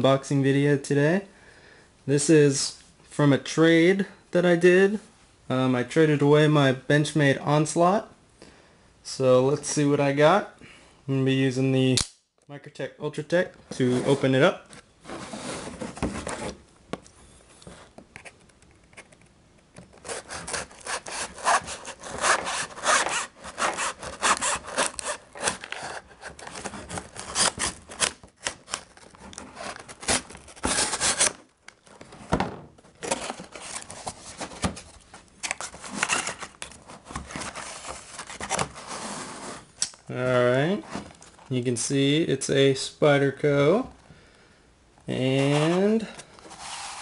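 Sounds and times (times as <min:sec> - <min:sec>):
knife cutting cardboard and tape: 0:19.8 - 0:31.4
contents rustling: 0:19.9 - 0:39.6.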